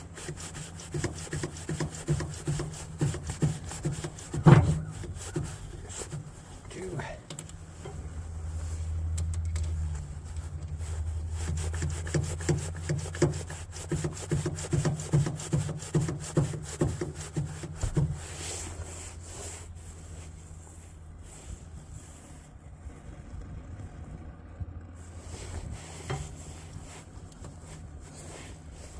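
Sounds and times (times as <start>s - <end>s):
hydraulic crimping tool pumping: 0.0s - 6.4s
low steady hum: 0.0s - 28.9s.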